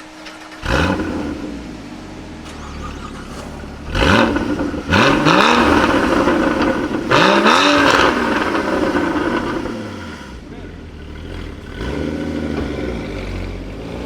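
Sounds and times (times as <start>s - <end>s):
car engine revving hard: 0.0s - 14.0s.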